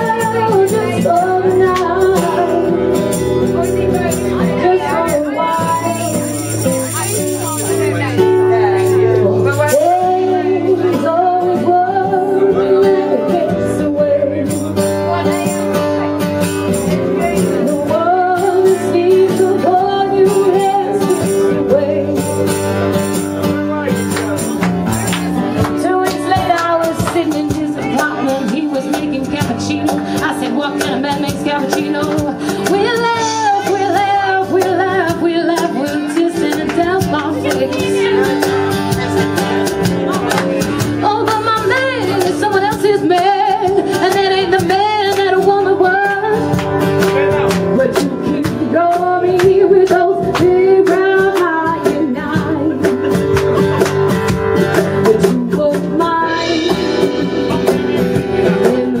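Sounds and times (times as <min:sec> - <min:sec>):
person singing: 0:00.0 - 0:15.8, 0:16.5 - 0:23.4, 0:25.6 - 0:53.8, 0:54.6 - 0:59.0
acoustic guitar: 0:00.0 - 0:59.0.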